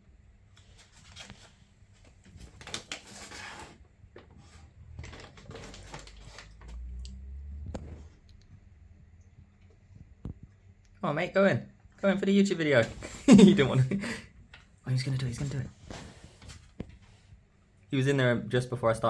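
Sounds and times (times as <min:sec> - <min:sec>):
paper bag rustling: 0:00.6 - 0:06.9.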